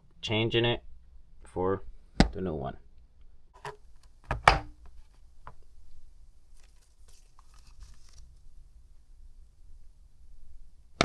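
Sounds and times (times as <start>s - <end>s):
light crinkling and rustling: 4.8s - 8.5s.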